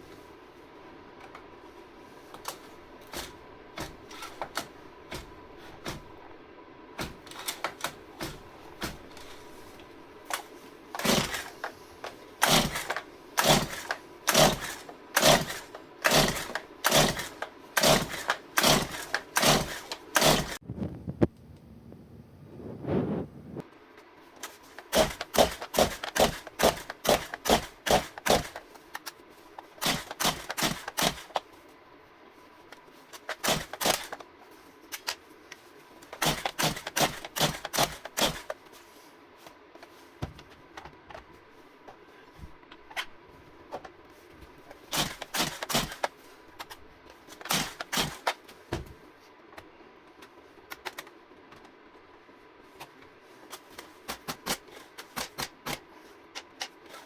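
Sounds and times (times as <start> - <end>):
chainsaw engine turning over: 11.0 - 20.6, 24.9 - 28.6, 29.8 - 31.4, 36.2 - 38.5, 44.9 - 46.1, 47.4 - 48.3
chainsaw recoil starter clicking: 12.4 - 20.6.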